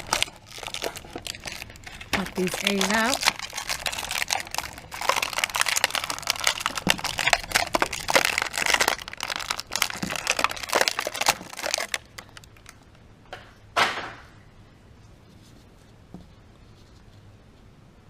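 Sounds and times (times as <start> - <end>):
plastic packaging crinkling: 0.0 - 12.8.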